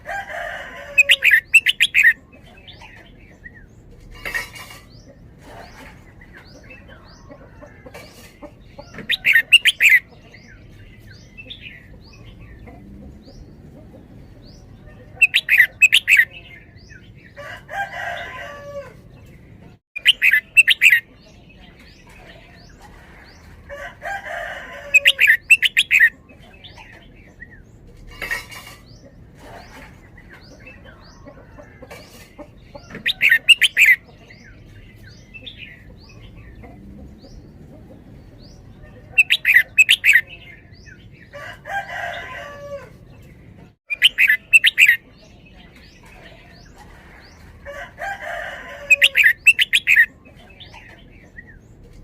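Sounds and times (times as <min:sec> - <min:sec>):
bird singing bubbling phrases: 0:01.0 - 0:03.7, 0:09.0 - 0:13.6, 0:14.7 - 0:17.1, 0:20.0 - 0:22.4, 0:25.0 - 0:27.6, 0:33.0 - 0:37.2, 0:39.1 - 0:41.0, 0:43.9 - 0:45.7, 0:48.9 - 0:51.6.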